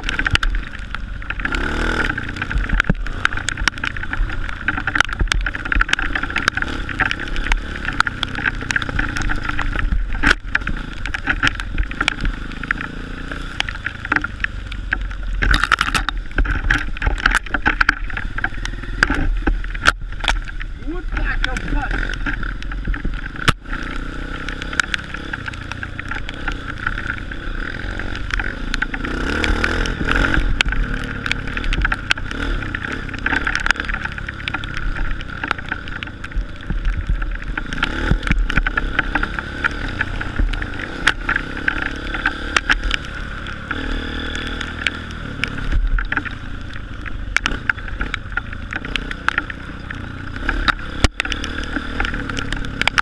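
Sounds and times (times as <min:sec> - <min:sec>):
knocks and clicks from bumps: 0:00.0 - 0:12.9
dirt bike engine revving: 0:01.1 - 0:14.4, 0:20.4 - 0:36.3, 0:37.1 - 0:46.8, 0:47.4 - 0:53.0.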